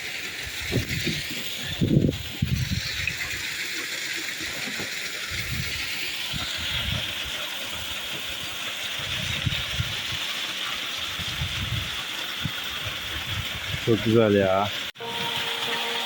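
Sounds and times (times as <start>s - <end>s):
waterfall rushing: 14.9s - 16.0s.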